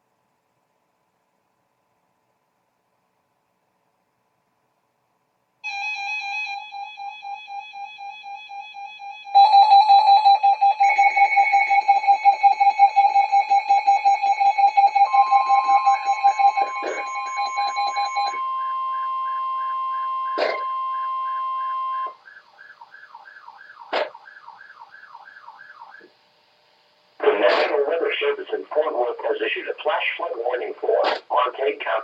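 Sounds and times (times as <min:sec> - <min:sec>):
steady high tone: 0:05.6 - 0:22.2
electronic alarm beeps: 0:05.7 - 0:23.9.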